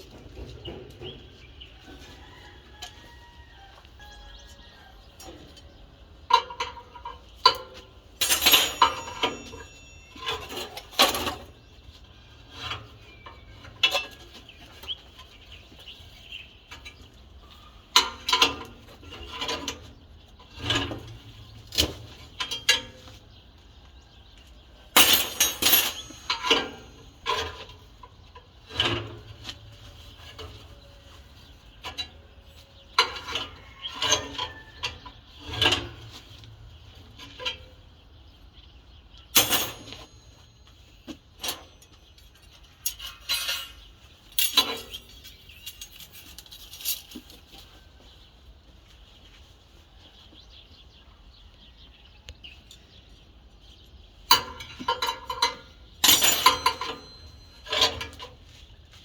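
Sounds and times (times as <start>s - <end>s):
steel pieces clanking: 6.3s - 11.6s, 24.9s - 28.1s, 39.3s - 47.3s, 54.3s - 58.4s.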